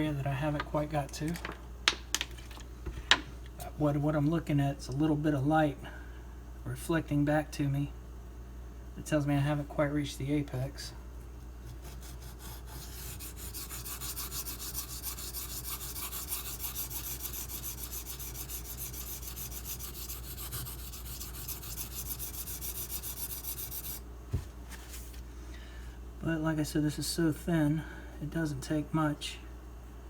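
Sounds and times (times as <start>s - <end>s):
knife scraping on whetstone: 11.8s - 24.0s.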